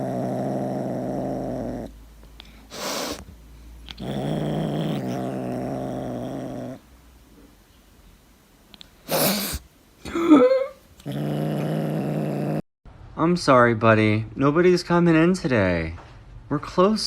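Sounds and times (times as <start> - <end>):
pet growling: 0.0 - 2.0, 2.7 - 6.9, 11.0 - 12.6
short hissing burst: 2.6 - 3.3.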